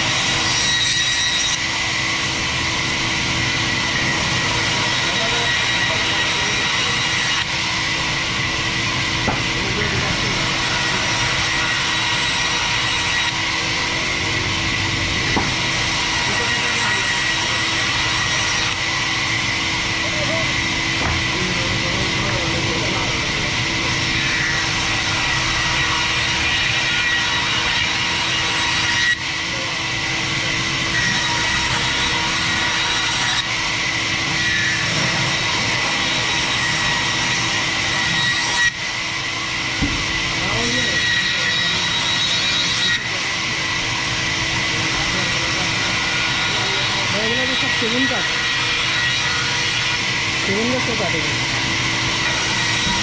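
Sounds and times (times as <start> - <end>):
bandsaw running with high whine: 0.0 - 53.0
short knock: 39.8 - 40.0.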